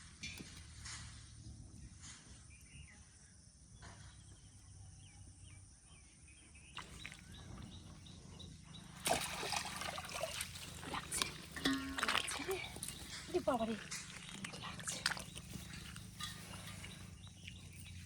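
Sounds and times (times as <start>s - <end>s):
faint chirps: 1.8s - 9.0s
water splashing: 6.8s - 8.1s, 8.8s - 18.0s.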